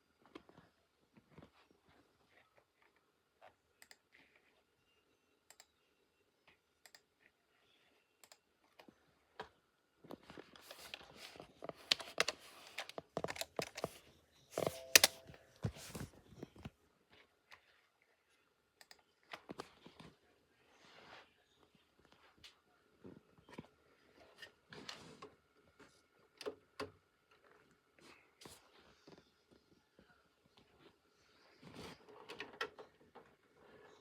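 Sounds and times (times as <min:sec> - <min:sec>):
plastic clicking and rattling: 0:11.6 - 0:14.0, 0:14.6 - 0:16.7.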